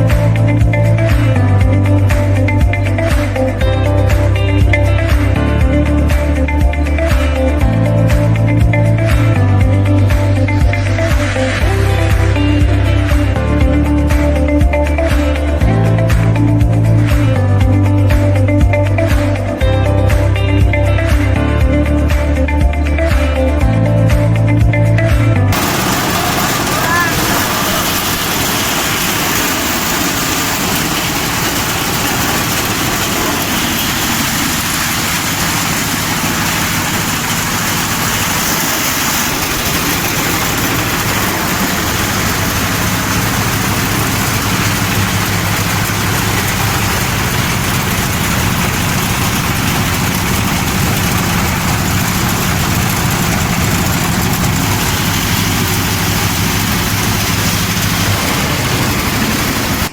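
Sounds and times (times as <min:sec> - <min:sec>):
chopping machine running: 0:25.5 - 0:59.9.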